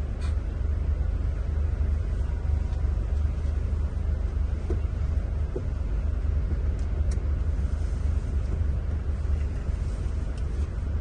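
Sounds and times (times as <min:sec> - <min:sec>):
coach engine rumbling: 0:00.0 - 0:11.0.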